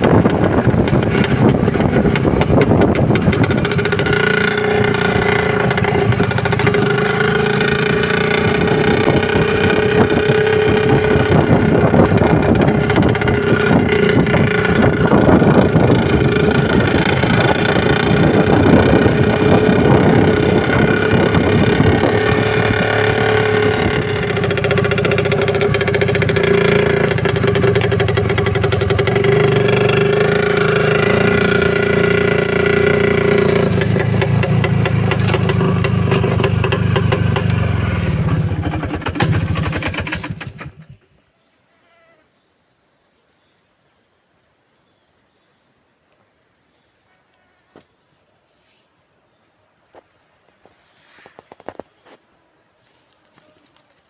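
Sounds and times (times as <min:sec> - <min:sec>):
two-stroke motorcycle engine running: 0:00.0 - 0:41.1.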